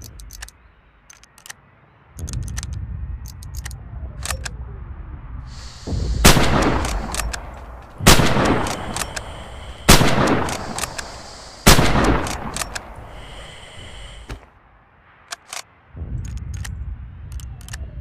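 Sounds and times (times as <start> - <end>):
rifle bolt clicks: 0.0 - 1.6, 2.2 - 4.5, 6.3 - 13.0, 15.3 - 15.7, 16.3 - 17.8
rifle shots with echo: 6.2 - 13.0.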